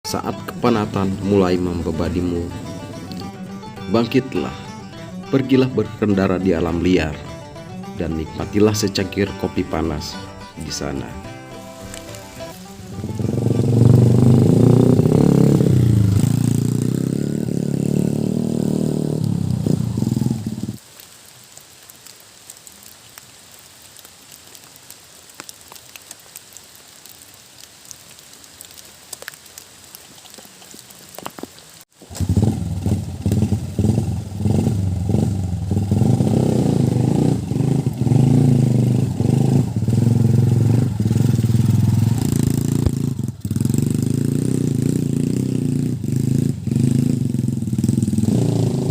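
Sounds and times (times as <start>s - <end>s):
motorcycle engine revving: 0.0s - 8.6s, 9.2s - 20.8s, 32.0s - 48.9s
scattered ticks: 28.6s - 31.6s.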